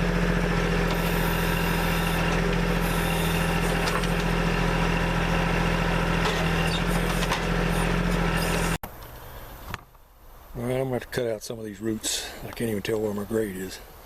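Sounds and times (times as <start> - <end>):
backhoe diesel engine running: 0.0 - 9.4.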